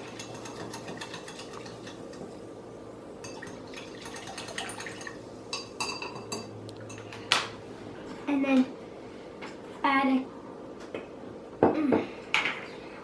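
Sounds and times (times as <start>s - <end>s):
utensil clinking against bowl: 0.0s - 2.2s, 3.2s - 7.2s.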